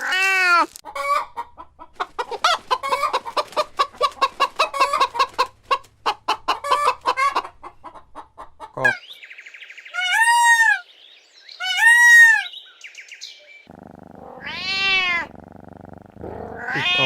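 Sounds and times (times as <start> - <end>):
cat meowing: 14.4 - 15.3, 16.5 - 17.0.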